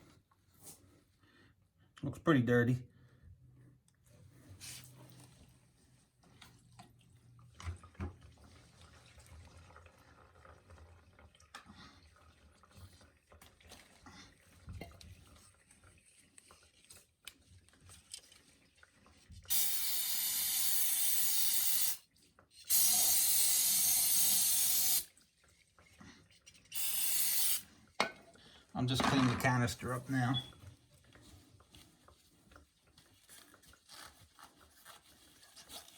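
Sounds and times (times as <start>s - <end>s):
hissing spray bursts: 19.5s - 22.0s, 22.7s - 25.1s, 26.7s - 27.6s.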